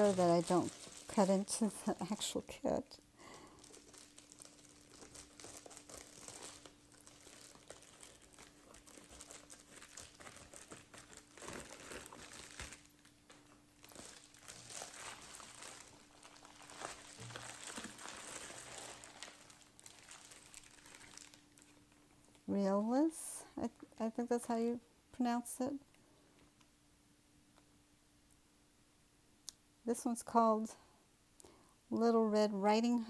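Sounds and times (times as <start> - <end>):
packaging crinkling and rustling: 0.0 - 2.3, 3.2 - 22.5.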